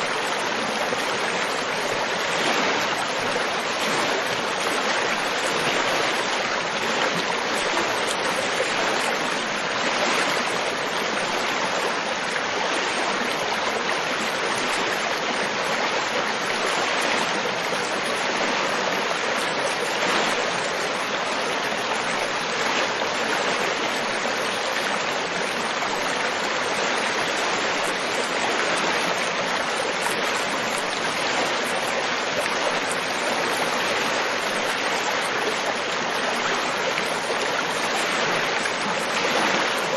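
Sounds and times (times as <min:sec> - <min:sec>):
river water flowing over rocks: 0:00.0 - 0:39.9.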